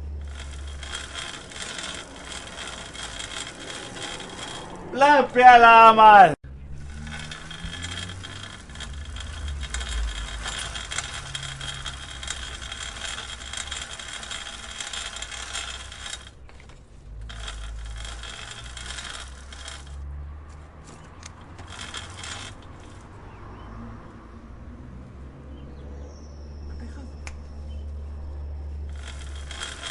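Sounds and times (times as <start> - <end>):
bicycle chain clicking and rattling: 0.0 - 5.2, 6.6 - 23.4, 28.8 - 29.9.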